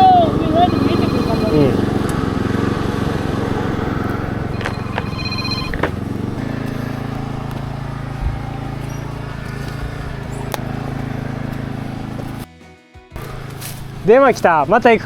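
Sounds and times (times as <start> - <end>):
phone ringtone: 0.0 - 2.6, 3.2 - 7.1
rice transplanter engine running: 0.0 - 12.4.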